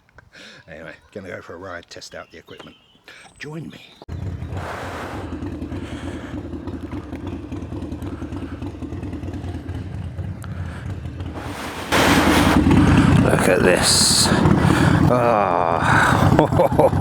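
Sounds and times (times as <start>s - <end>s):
motorcycle engine idling: 4.1s - 17.0s.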